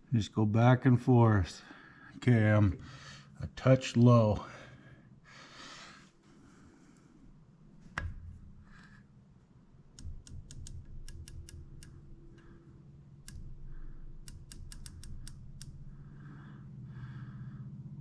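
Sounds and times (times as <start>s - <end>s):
faint low hum: 0.0s - 18.0s
scope turret clicks: 9.8s - 16.1s.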